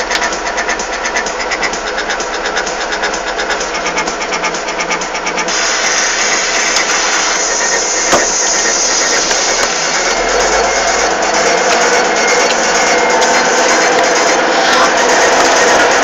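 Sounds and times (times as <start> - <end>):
backhoe diesel engine rattling: 0.0 - 16.0.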